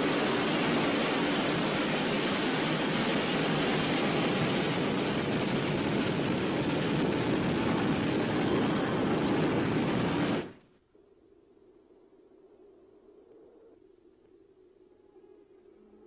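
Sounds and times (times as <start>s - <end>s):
loud steady rushing noise: 0.0s - 10.6s.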